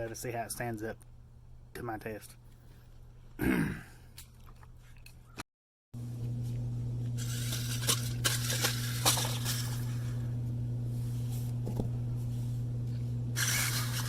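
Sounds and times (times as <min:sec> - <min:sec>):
steady low hum: 0:06.0 - 0:14.0.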